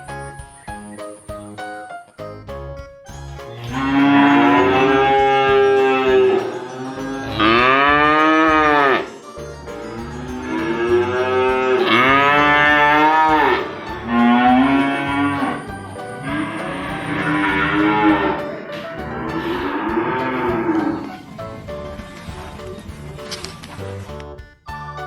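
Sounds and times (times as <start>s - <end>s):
cattle mooing: 11.2s - 15.6s, 19.3s - 21.1s.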